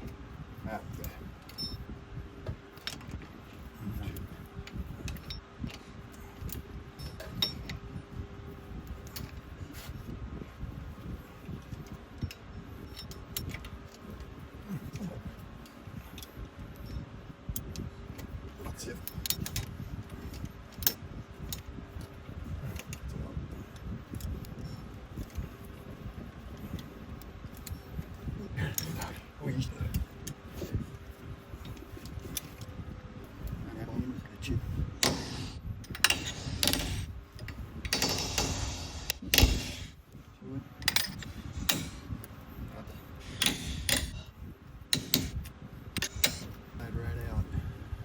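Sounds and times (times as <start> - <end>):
metal tools clinking: 1.5 - 1.8, 35.0 - 39.9, 40.8 - 42.0, 46.0 - 46.5
heavy thump: 38.0 - 40.0.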